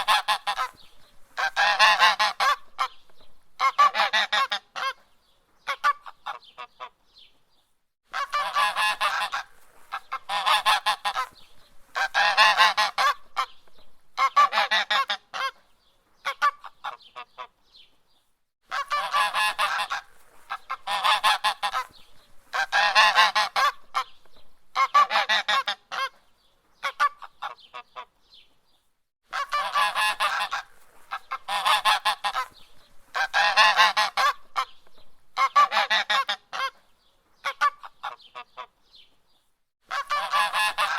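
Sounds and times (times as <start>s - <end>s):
goose honking: 0.0s - 0.8s, 1.4s - 3.0s, 3.6s - 5.0s, 8.1s - 13.5s, 14.2s - 15.6s, 18.7s - 24.1s, 24.7s - 26.1s, 29.3s - 34.7s, 35.4s - 36.8s, 39.9s - 40.9s.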